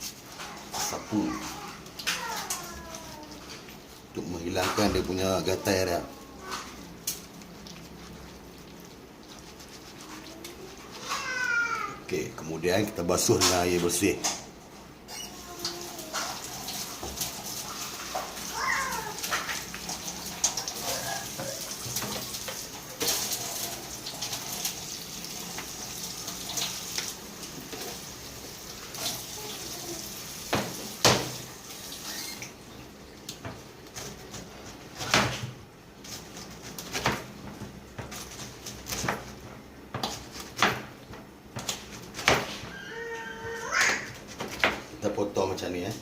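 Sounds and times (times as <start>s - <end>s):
tap water running and splashing: 0.0s - 12.0s, 15.2s - 44.8s.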